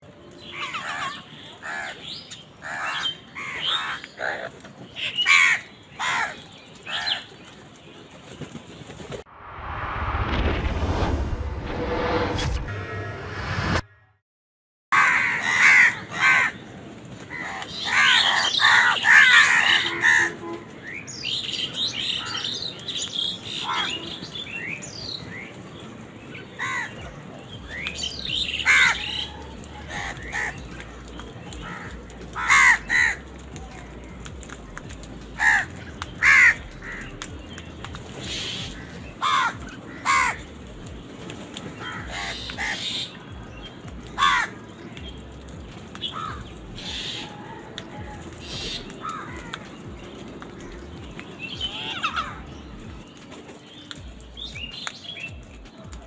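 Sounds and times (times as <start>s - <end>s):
crows cawing: 0.6s - 7.3s, 14.9s - 16.7s, 17.3s - 20.4s, 22.1s - 22.7s, 23.5s - 24.1s, 26.6s - 27.1s, 28.5s - 30.9s, 31.5s - 33.9s, 35.4s - 37.3s, 38.3s - 40.6s, 41.8s - 43.2s, 44.0s - 44.8s, 46.0s - 50.1s, 51.6s - 52.5s.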